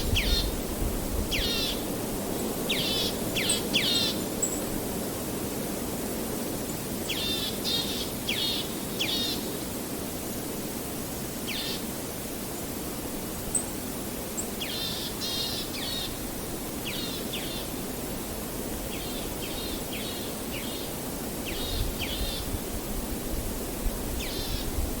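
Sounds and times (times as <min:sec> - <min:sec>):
wind in leaves: 0:00.0 - 0:25.0.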